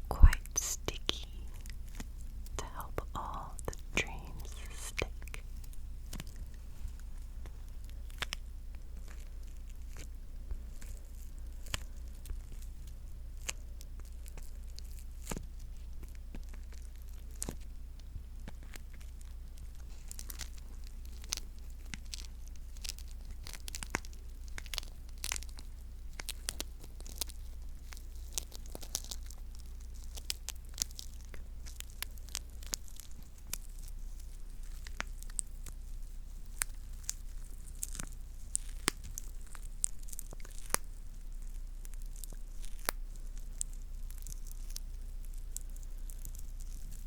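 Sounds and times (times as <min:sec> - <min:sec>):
faint low hum: 0:00.0 - 0:47.0
sticky surface peeling apart: 0:18.4 - 0:47.0.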